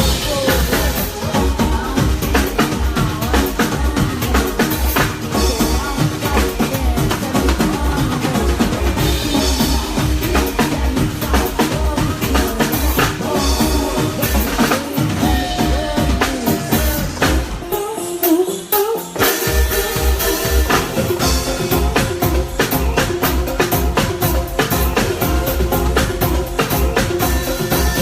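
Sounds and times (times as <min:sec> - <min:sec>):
bass: 0:00.0 - 0:17.9, 0:19.2 - 0:28.0
drum kit: 0:00.0 - 0:28.0
melodic line: 0:15.2 - 0:28.0.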